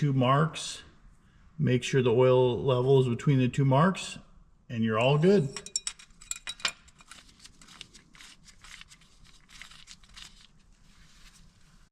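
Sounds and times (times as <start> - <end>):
rustling: 6.9 - 11.9.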